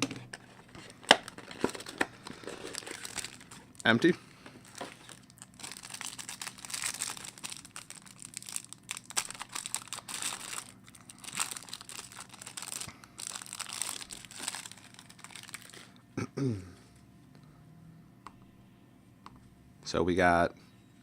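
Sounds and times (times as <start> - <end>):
plastic wrapping crinkling: 0.0 - 16.0.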